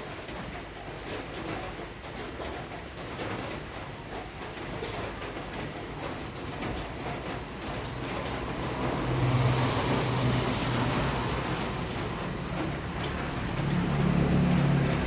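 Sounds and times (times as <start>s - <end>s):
another vehicle engine approaching: 6.7s - 15.0s
vehicle passing: 7.6s - 15.0s.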